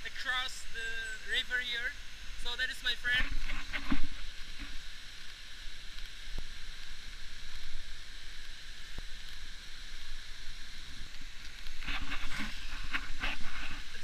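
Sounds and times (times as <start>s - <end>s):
river flowing: 0.0s - 14.0s
faint ticks: 3.7s - 7.9s, 8.8s - 14.0s.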